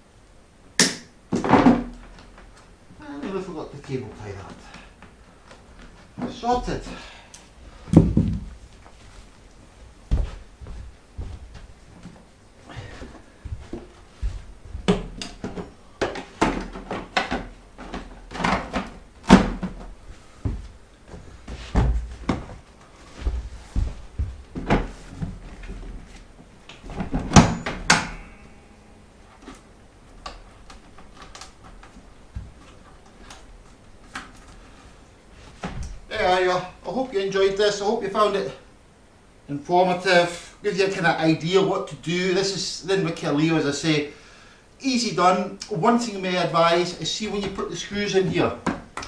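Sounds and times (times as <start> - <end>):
irregular knocks and clunks: 7.9 - 8.5.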